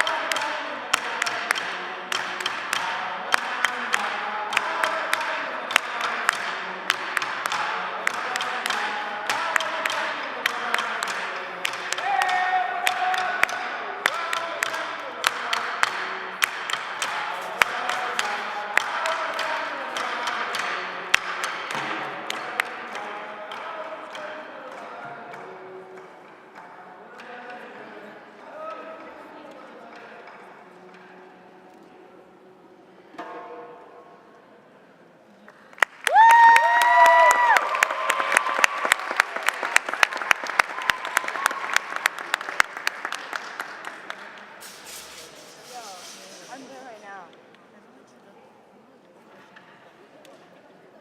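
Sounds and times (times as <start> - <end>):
audience applauding: 35.5 - 44.5
crowd cheering: 35.8 - 44.3.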